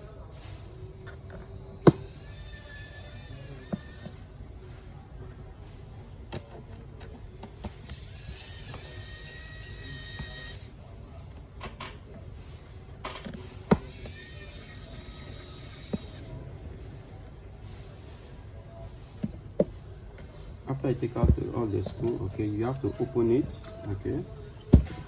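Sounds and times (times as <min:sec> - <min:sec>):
screwdriver whirring: 0:01.8 - 0:04.2, 0:07.8 - 0:10.7, 0:13.1 - 0:16.3.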